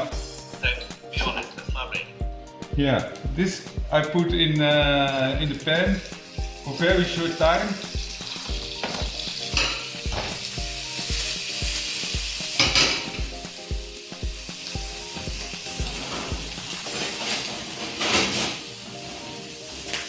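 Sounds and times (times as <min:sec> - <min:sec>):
prawns sizzling in a frying pan: 0:04.1 - 0:20.0.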